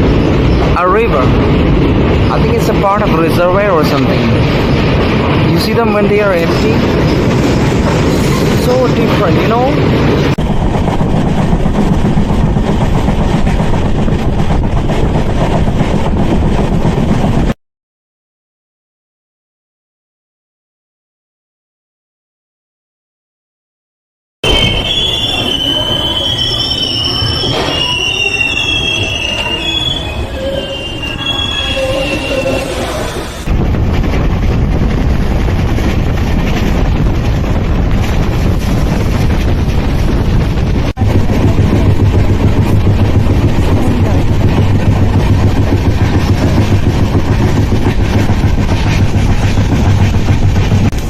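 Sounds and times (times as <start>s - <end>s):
train rumble: 0.0s - 17.6s, 24.4s - 51.0s
train wheels squealing: 24.4s - 33.4s.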